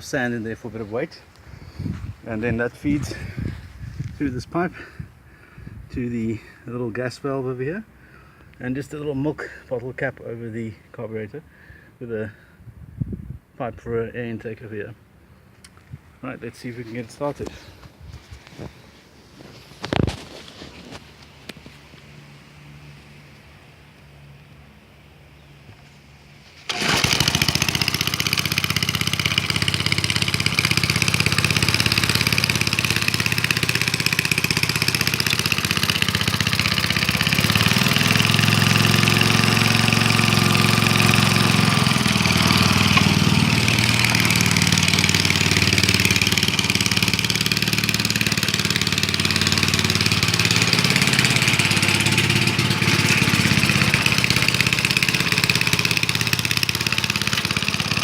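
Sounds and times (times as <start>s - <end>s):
lawnmower engine starting and running: 25.9s - 58.0s.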